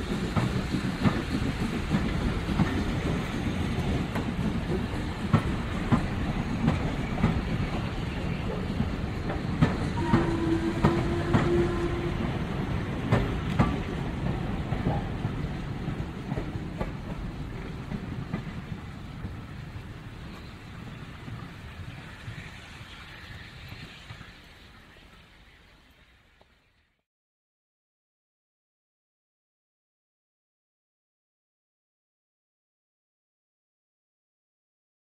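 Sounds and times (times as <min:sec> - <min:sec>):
train wheels clacking over rail joints: 0:00.0 - 0:25.2.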